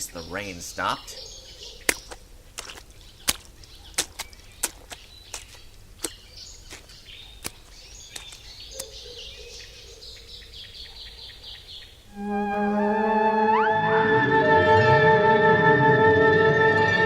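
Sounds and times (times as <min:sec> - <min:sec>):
birds chirping and singing: 0:00.0 - 0:02.2, 0:03.0 - 0:12.0.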